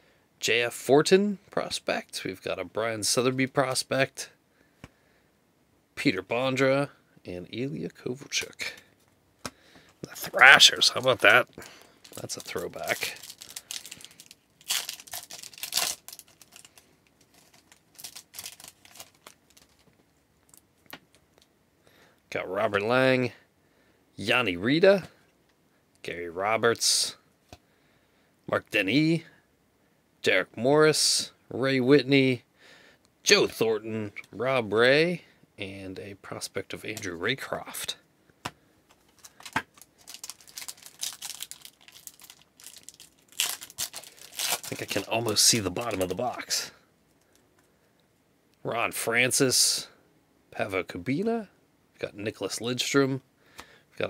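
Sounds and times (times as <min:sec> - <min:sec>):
wrapper tearing and crinkling: 0:10.3 - 0:19.9, 0:39.1 - 0:46.3.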